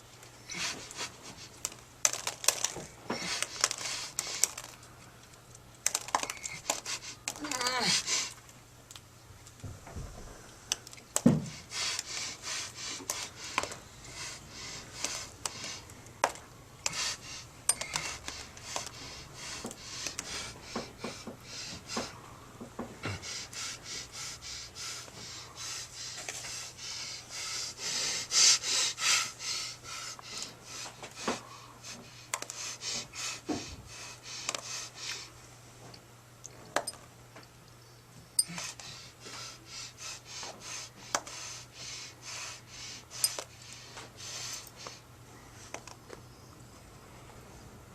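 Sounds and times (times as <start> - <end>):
steady low hum: 0.0 - 47.9
person gasping for breath: 6.5 - 8.4.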